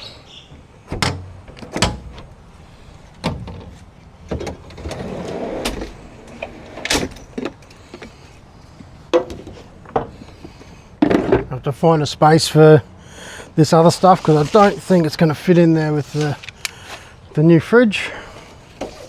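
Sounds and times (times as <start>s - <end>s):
rubbing sliding noise: 14.0s - 15.1s.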